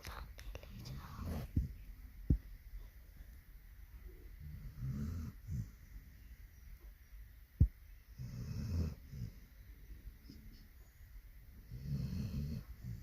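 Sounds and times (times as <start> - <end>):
dog snoring: 4.4 - 5.8, 8.1 - 9.5, 11.6 - 13.0.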